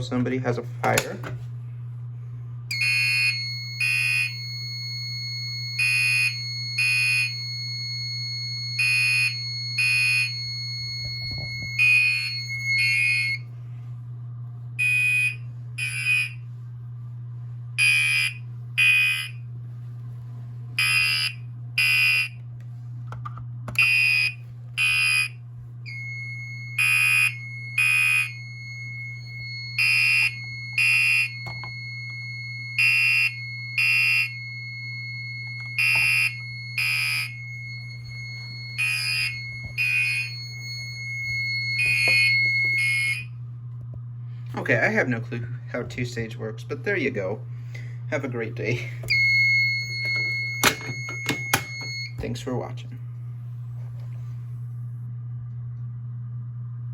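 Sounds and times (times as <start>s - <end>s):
steady low hum: 0.0s - 56.9s
fire alarm horn blasts: 2.7s - 13.5s, 14.8s - 16.5s, 17.8s - 19.5s, 20.8s - 22.4s, 23.8s - 43.4s, 49.1s - 52.4s
steady high tone: 2.7s - 13.5s, 25.9s - 43.4s.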